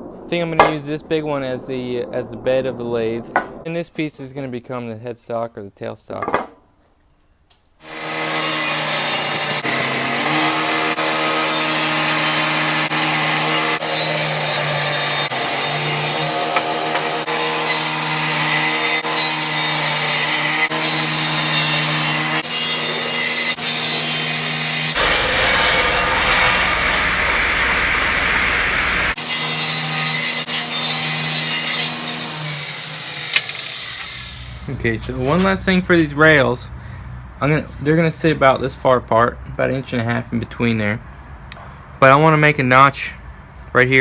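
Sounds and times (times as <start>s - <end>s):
power saw cutting wood: 7.8s - 35.6s.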